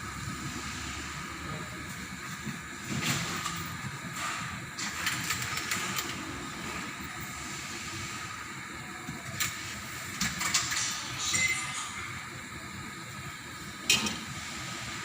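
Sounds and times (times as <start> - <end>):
hiss of water heating: 0.0 - 15.0
sharp clicks and crackles: 4.8 - 6.2.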